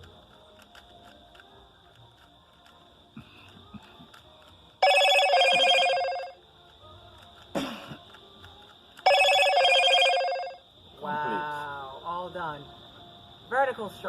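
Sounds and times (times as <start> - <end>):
telephone ringing: 4.8 - 6.4, 9.0 - 10.6.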